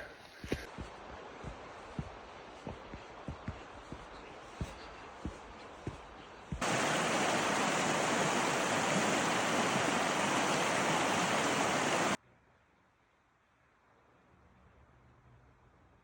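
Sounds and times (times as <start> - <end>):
rushing river water: 0.7 - 12.2.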